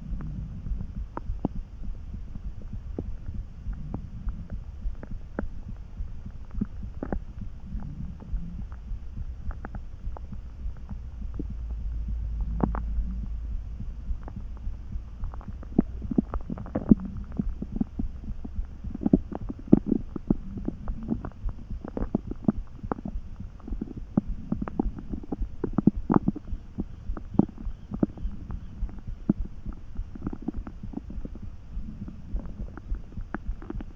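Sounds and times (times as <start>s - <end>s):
stomach gurgling: 0.0s - 13.3s, 14.1s - 33.9s
low steady thrum: 0.0s - 33.9s.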